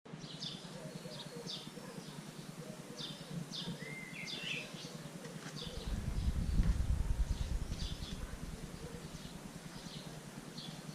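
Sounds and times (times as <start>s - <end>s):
small birds chirping: 0.1s - 10.9s
low rumble: 5.8s - 9.4s.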